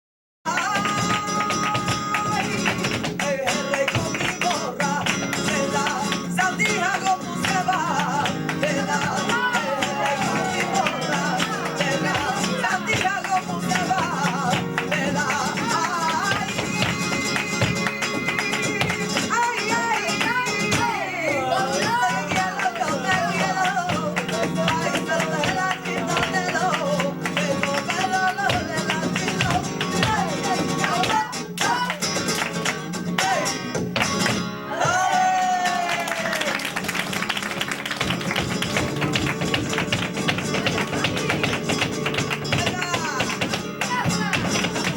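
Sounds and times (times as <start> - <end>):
person singing: 0.5 - 32.2
flamenco guitar: 0.5 - 44.9.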